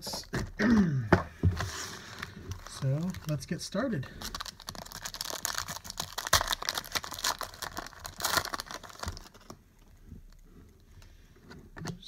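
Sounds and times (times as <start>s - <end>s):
packaging crinkling and tearing: 1.7s - 3.6s, 4.2s - 10.4s.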